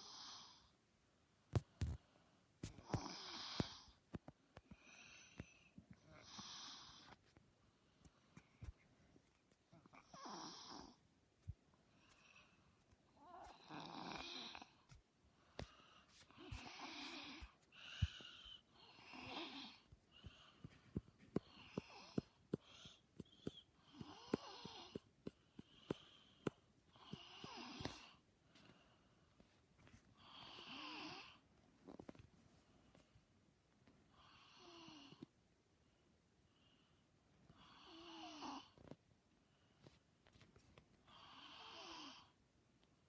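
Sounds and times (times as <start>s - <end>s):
wheezy snoring: 0.0s - 0.7s, 2.8s - 4.0s, 6.1s - 7.1s, 9.9s - 11.0s, 13.5s - 14.8s, 16.4s - 20.4s, 21.3s - 25.1s, 26.9s - 28.2s, 30.2s - 31.4s, 34.2s - 35.2s, 37.6s - 38.8s, 41.1s - 42.4s.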